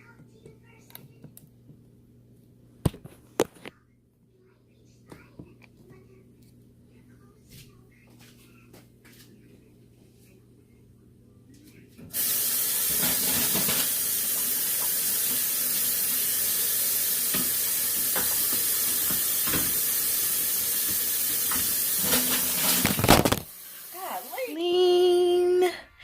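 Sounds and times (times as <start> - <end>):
tap running into sink: 12.1 - 23.5.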